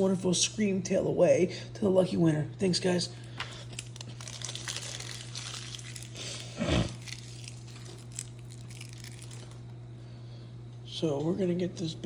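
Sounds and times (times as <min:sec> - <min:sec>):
steady low hum: 0:00.0 - 0:12.0
plastic packaging crinkling: 0:03.2 - 0:09.8.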